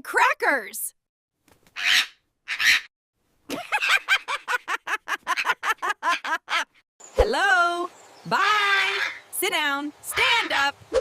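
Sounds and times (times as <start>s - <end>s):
parrot squawking: 1.8s - 2.9s, 8.6s - 9.2s.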